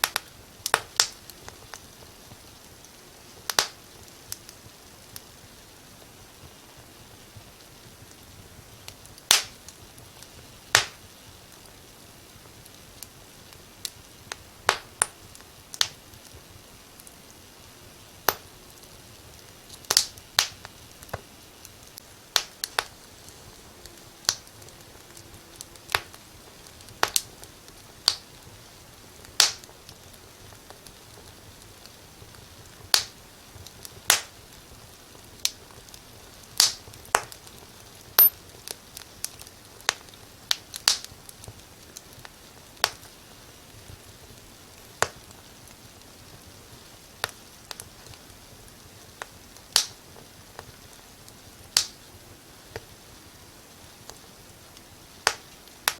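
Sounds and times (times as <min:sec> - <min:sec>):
faint steady hiss: 0:00.0 - 0:55.9
wood fire crackling: 0:00.0 - 0:55.9.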